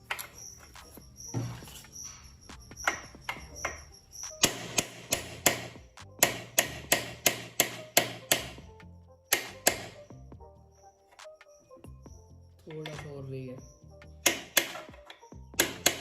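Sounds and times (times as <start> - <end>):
hammer knocking on metal: 2.7 - 8.7, 9.3 - 10.0, 14.2 - 16.0.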